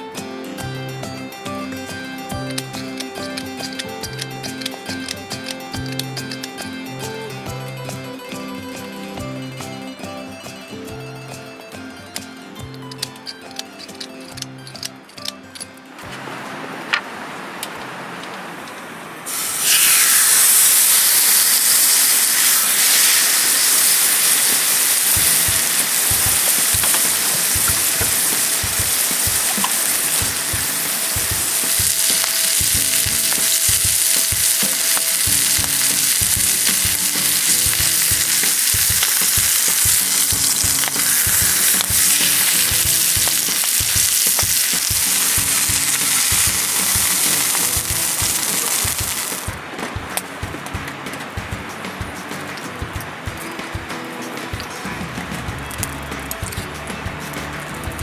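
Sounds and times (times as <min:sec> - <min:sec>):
background music: 0:00.0 - 0:17.0, 0:19.6 - 0:58.0
steak sizzling in a pan: 0:19.3 - 0:49.5.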